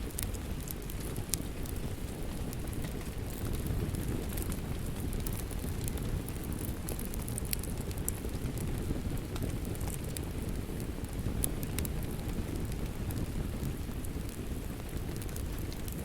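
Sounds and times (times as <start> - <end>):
fire crackling and popping: 0.0 - 16.0
steady rain: 0.0 - 16.0.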